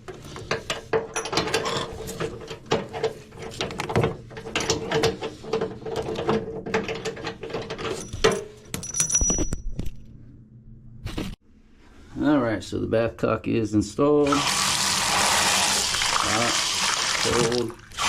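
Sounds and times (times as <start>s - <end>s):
metal tools clinking on fittings: 6.8s - 9.6s.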